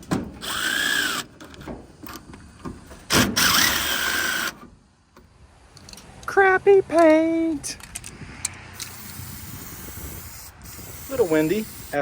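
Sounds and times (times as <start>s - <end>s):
spray paint can hissing: 8.9s - 12.0s.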